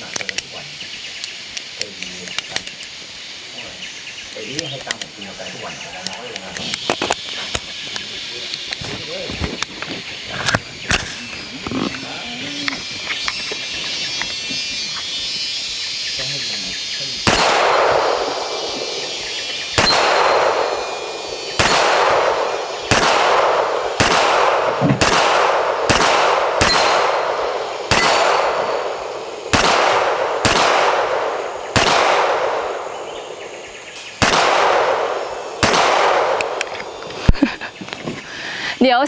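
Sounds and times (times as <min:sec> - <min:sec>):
handgun shots echoing: 0:10.4 - 0:14.4, 0:17.2 - 0:37.4.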